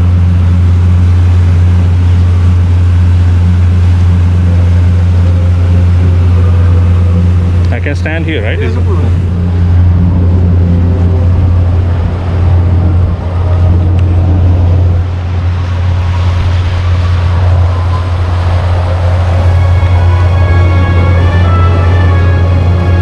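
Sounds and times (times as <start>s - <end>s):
boat motor humming: 0.0s - 23.0s
water rushing: 0.0s - 23.0s
wind: 0.0s - 23.0s.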